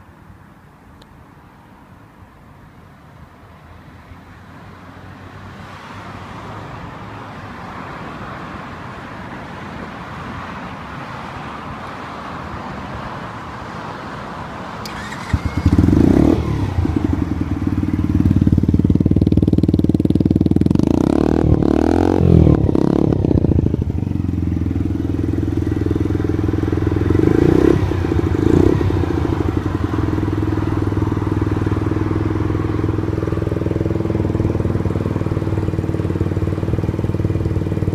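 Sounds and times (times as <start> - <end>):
scooter engine starting and idling: 14.8 - 37.9.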